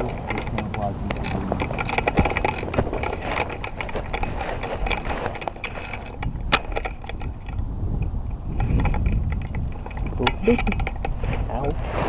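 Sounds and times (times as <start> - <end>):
footsteps in dry leaves: 2.8 - 5.6.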